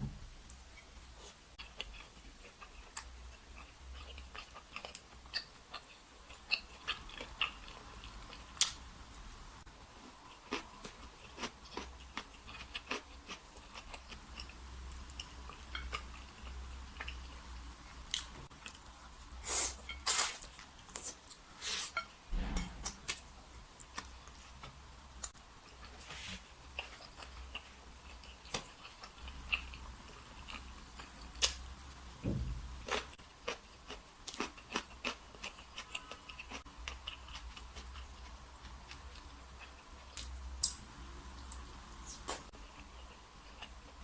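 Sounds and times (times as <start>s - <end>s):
person chewing food: 1.2s - 8.8s, 10.0s - 22.1s, 23.9s - 31.7s, 32.8s - 40.4s, 41.4s - 44.0s
low bumps: 22.3s - 23.2s.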